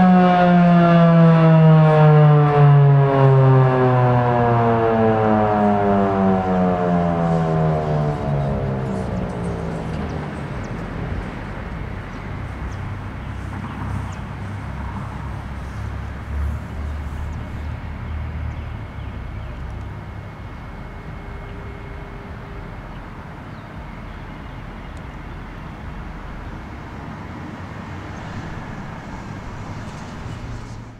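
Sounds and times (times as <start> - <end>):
traffic rumble and hiss: 0.0 - 30.9.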